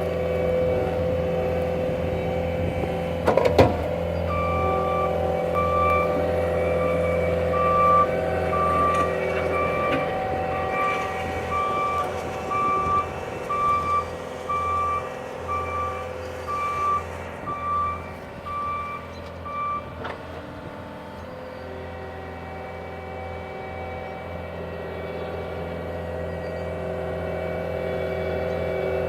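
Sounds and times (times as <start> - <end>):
diesel engine running: 0.0 - 29.0
backup alarm beeping: 4.2 - 19.9.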